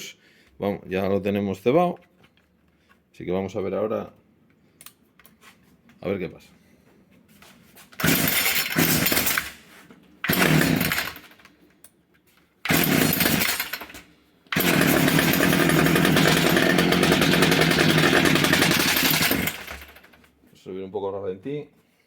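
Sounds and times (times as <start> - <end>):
string trimmer engine starting and running: 8.0 - 9.6, 10.2 - 11.5, 12.7 - 20.3.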